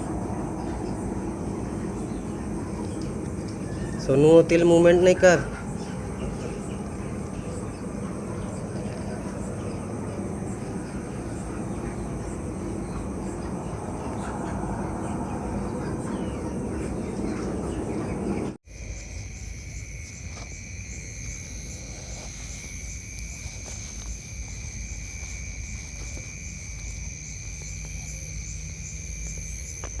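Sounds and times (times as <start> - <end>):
insects trilling: 0.0 - 30.0
loud rumbling noise: 5.9 - 18.6.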